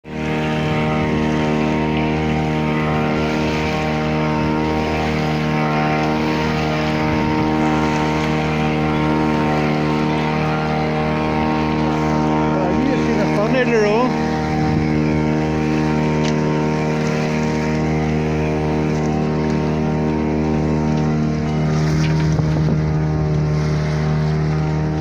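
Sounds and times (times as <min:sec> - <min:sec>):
boat engine droning: 0:00.0 - 0:25.0.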